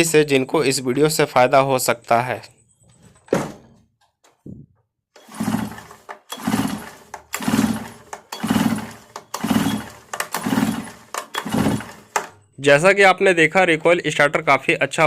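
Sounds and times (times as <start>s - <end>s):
recoil starter rope whirr: 5.2s - 12.3s.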